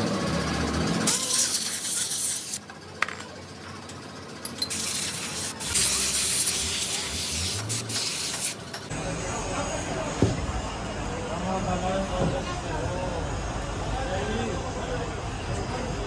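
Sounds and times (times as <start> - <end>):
hissing spray: 1.1 - 2.6, 4.7 - 8.7.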